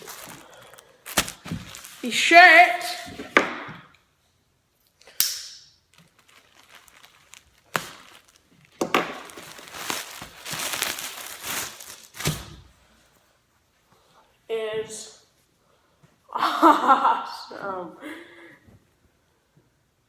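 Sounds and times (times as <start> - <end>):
packaging crinkling and rustling: 0.0 - 2.1, 5.8 - 12.7.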